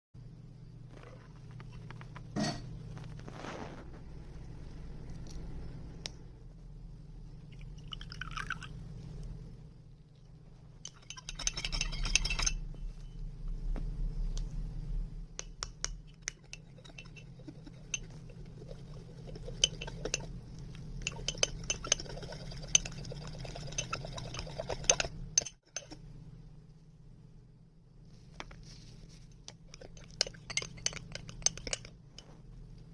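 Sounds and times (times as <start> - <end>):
steady low hum: 0.2 - 32.9
spoon clinking against a mug: 10.8 - 12.6, 21.0 - 26.0, 29.7 - 32.0.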